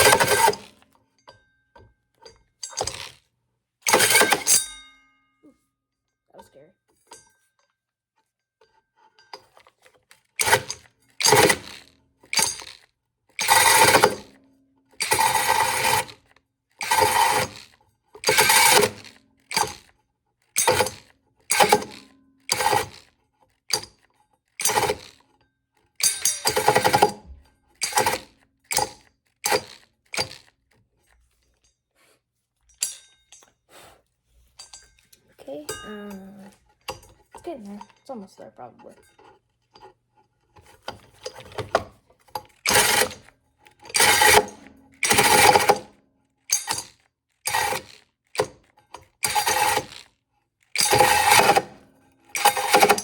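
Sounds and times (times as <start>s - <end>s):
cordless drill with hole saw: 0.0s - 0.8s, 3.9s - 4.6s, 10.4s - 12.8s, 13.4s - 14.4s, 15.0s - 19.9s, 20.6s - 23.9s, 24.6s - 25.2s, 26.0s - 30.6s, 40.8s - 45.9s, 46.5s - 53.0s.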